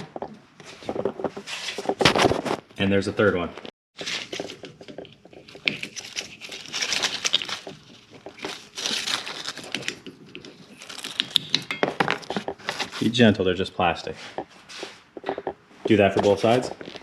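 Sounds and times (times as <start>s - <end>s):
plastic trim crinkling and crackling: 4.0s - 13.0s.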